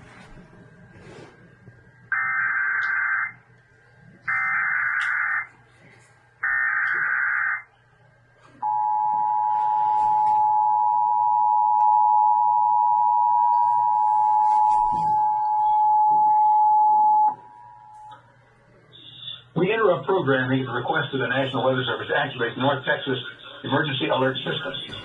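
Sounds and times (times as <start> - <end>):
two-tone attention signal: 8.6 - 18.1.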